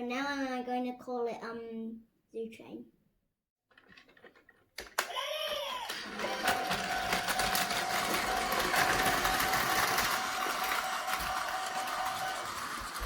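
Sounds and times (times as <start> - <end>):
toy train motor whirring: 4.9 - 13.0.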